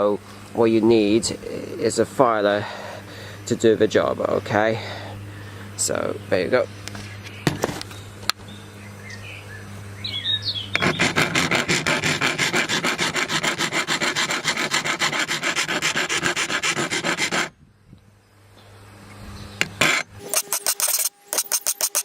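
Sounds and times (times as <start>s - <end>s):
hand file rasping on steel blade: 10.8s - 17.5s, 19.8s - 22.0s.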